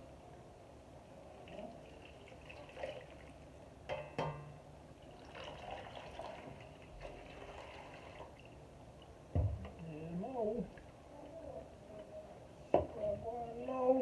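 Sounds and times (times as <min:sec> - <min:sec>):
liquid pouring and dripping: 0:01.4 - 0:03.5, 0:05.0 - 0:09.7.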